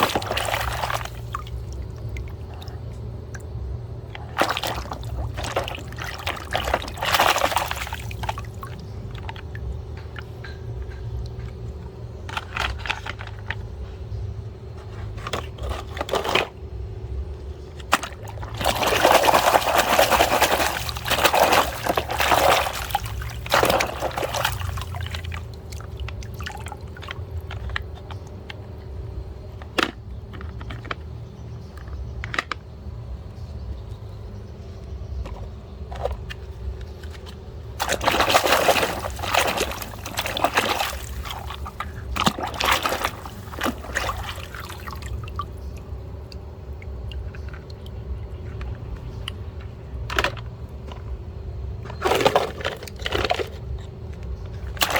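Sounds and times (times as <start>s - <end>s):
water pouring and splashing: 0.0s - 11.6s, 17.8s - 28.5s, 37.0s - 49.4s, 54.5s - 54.9s
small clicks and knocks: 29.5s - 32.8s.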